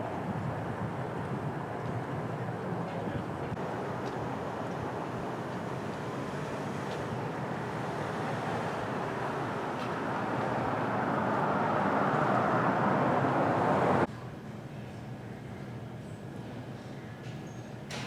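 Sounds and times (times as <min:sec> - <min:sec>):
moving train rumble: 0:00.0 - 0:14.1.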